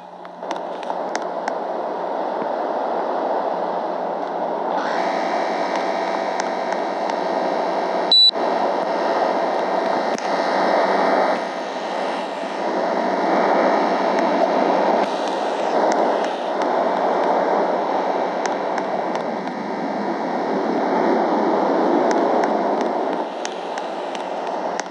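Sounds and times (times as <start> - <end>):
short high-pitched beep: 8.1 - 8.4.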